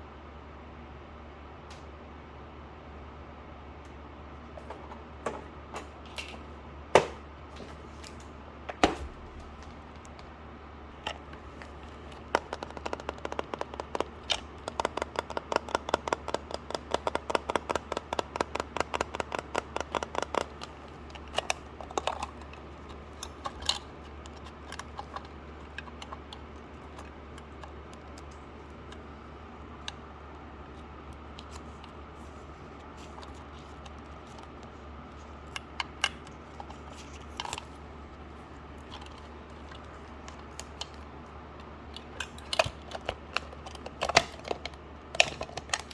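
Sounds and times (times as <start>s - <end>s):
hands handling packaging clicks: 10.9s - 45.9s.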